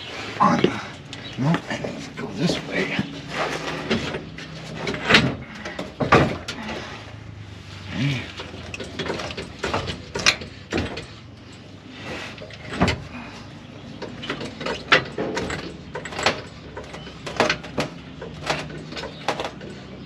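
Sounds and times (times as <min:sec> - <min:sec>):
metal tools clicking and knocking: 0:08.3 - 0:11.8, 0:13.9 - 0:20.0.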